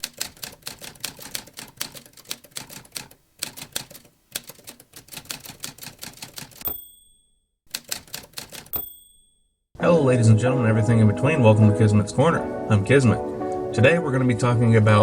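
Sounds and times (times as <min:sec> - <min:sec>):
typewriter keys clacking: 0:00.0 - 0:06.9, 0:07.7 - 0:09.0
typewriter carriage bell ding: 0:06.1 - 0:09.6.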